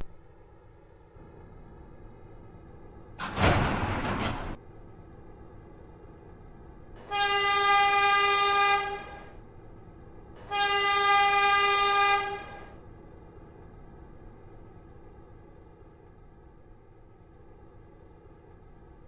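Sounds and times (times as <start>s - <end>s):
horn blasts: 7.0s - 9.4s, 10.4s - 12.8s.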